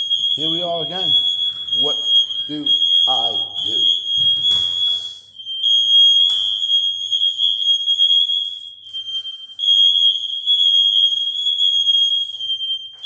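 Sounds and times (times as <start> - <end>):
smoke alarms high tone: 0.0 - 13.0.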